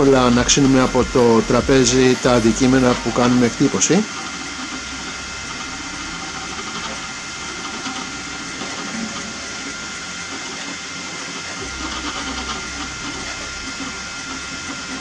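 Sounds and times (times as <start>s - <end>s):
printer mechanical whir: 0.0s - 15.0s.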